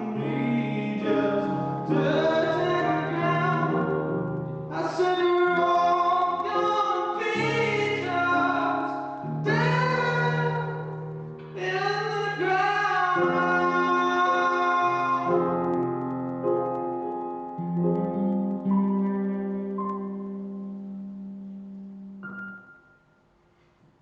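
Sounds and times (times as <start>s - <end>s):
person singing long held notes: 0.0s - 15.9s
musical accompaniment: 0.0s - 23.1s.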